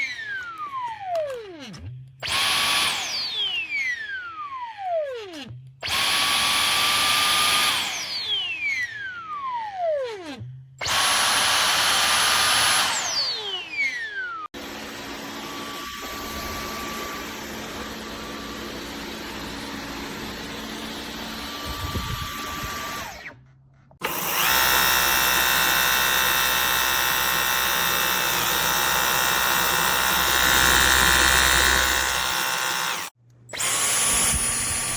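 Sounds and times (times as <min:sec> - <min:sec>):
vacuum motor whining: 0:14.6 - 0:23.3, 0:24.0 - 0:34.9.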